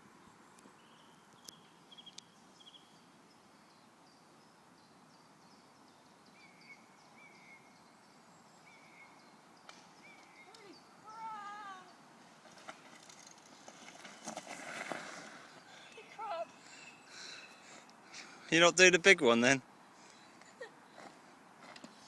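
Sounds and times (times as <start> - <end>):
steady low hiss: 0.0 - 22.0
small birds chirping: 0.5 - 12.8, 15.0 - 18.6.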